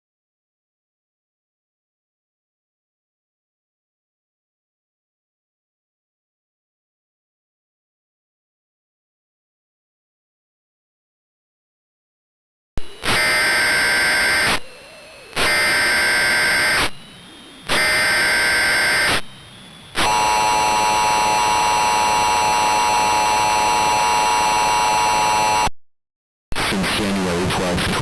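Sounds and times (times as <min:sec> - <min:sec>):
data burst tones: 0:12.8 - 0:25.7.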